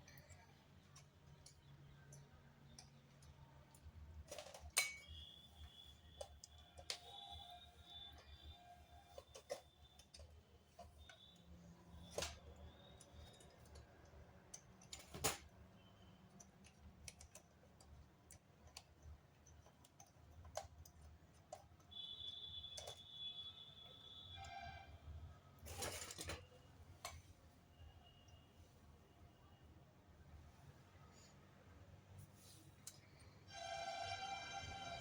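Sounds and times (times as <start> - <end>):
faint clicks and taps: 0.0 - 24.3
faint high steady tone: 4.8 - 13.8.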